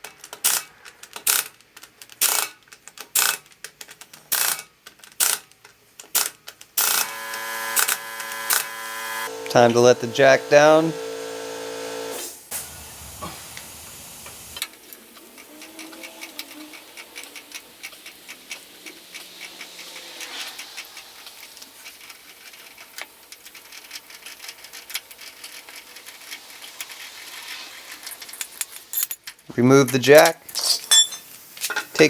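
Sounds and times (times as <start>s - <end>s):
faint hiss: 12.3s - 14.7s, 16.4s - 22.8s.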